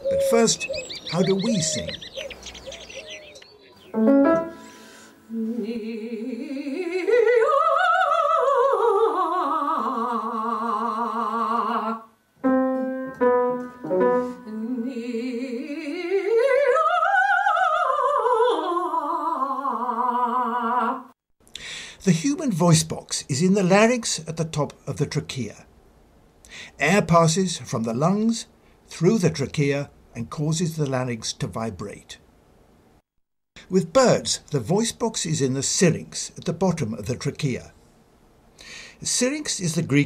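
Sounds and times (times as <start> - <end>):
short piano notes: 4.0 - 4.8, 12.4 - 14.5
operatic singing voice: 5.3 - 12.1, 14.4 - 21.1.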